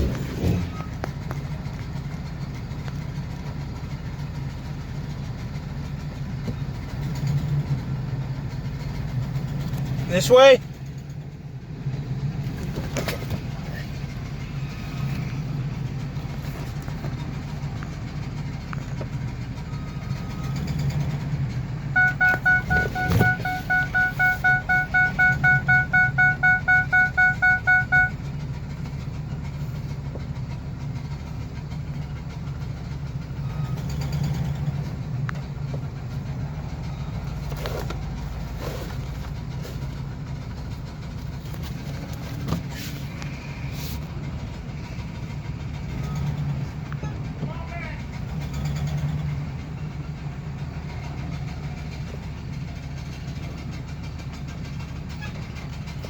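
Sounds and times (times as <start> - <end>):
van engine running: 0.0 - 56.0
rapid electronic beeping: 22.0 - 28.2.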